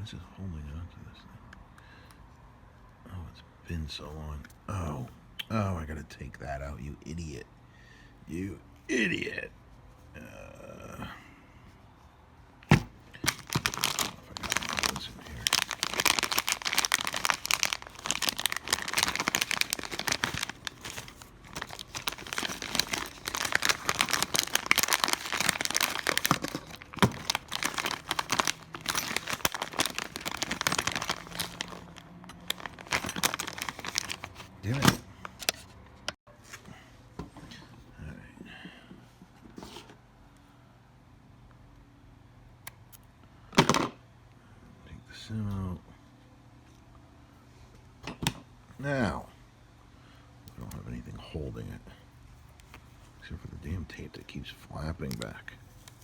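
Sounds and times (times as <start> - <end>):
thin plastic crinkling: 13.1 - 35.7.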